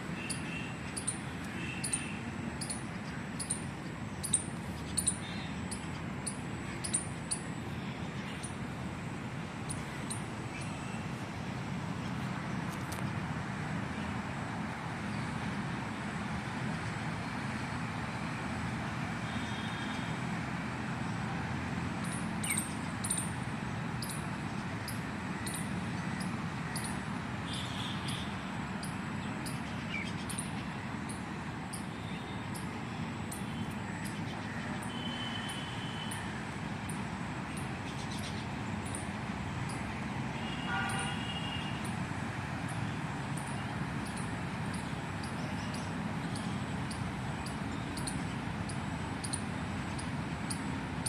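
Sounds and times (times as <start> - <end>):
traffic noise: 0.0 - 51.0
squirrel chirping: 0.2 - 7.5, 22.0 - 23.3, 24.0 - 39.1, 43.4 - 50.7.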